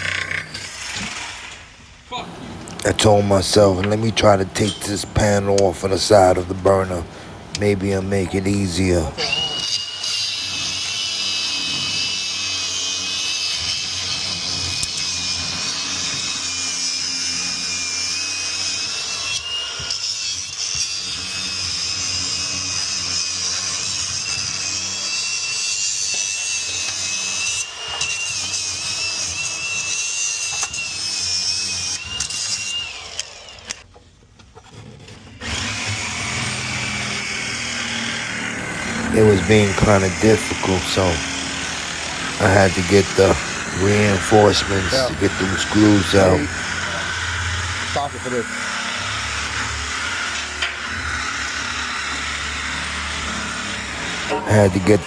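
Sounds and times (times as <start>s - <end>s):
power drill whining: 9.0s - 33.8s, 35.4s - 47.2s, 53.7s - 55.0s.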